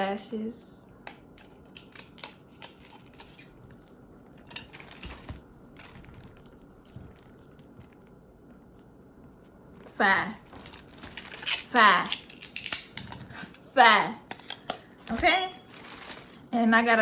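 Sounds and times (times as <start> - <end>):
packaging crinkling: 1.8 - 8.2, 9.8 - 13.2, 14.4 - 17.0.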